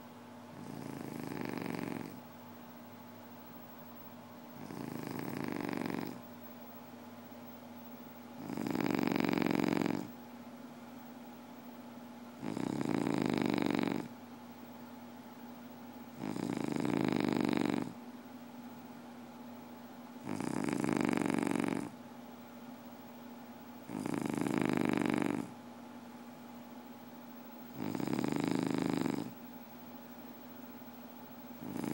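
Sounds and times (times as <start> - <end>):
faint steady hum: 0.0 - 31.9
person snoring: 0.6 - 2.2, 4.6 - 6.2, 8.4 - 10.1, 12.4 - 14.1, 16.2 - 18.0, 20.2 - 21.9, 23.9 - 25.5, 27.8 - 29.4, 31.6 - 31.9.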